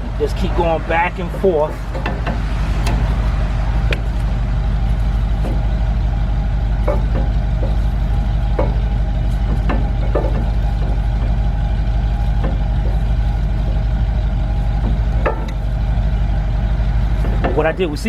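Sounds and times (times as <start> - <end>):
engine running low rumble: 0.0 - 18.0
clamp clicks and creaks: 1.2 - 4.4.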